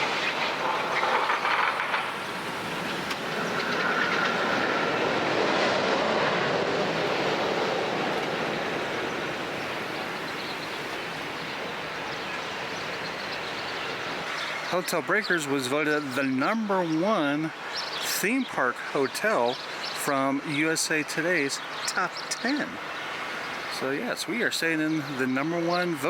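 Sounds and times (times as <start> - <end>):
rail vehicle rumbling along track: 0.0 - 14.8.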